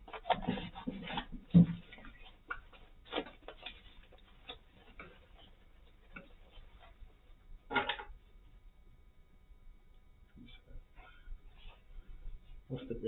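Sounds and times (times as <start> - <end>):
plastic parts clicking and knocking: 0.0 - 5.2.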